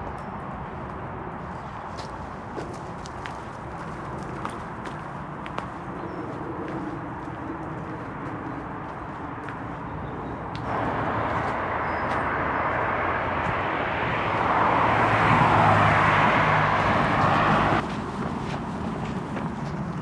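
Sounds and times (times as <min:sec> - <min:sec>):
road noise: 0:00.0 - 0:20.0
vehicle engine: 0:10.4 - 0:20.0.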